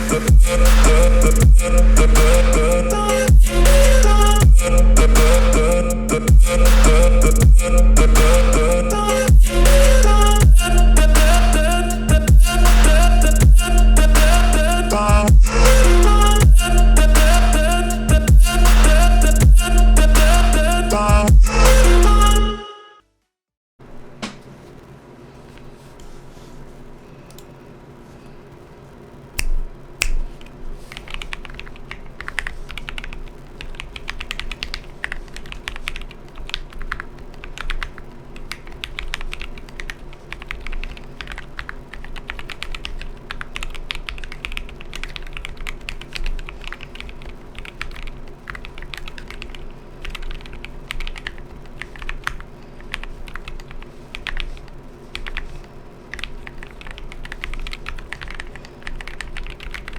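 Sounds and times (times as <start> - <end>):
fast mechanical keyboard typing: 31.0 - 59.9.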